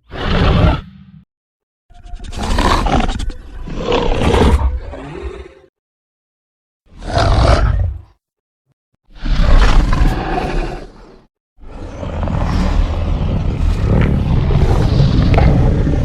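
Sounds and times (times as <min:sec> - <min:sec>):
dinosaur roars: 0:02.4 - 0:05.7, 0:06.9 - 0:08.1, 0:09.2 - 0:16.0.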